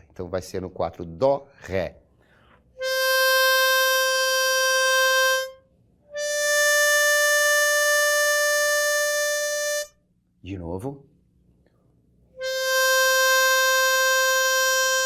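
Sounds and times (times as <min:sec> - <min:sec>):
harmonica long single notes: 0:02.7 - 0:10.0, 0:12.3 - 0:15.0.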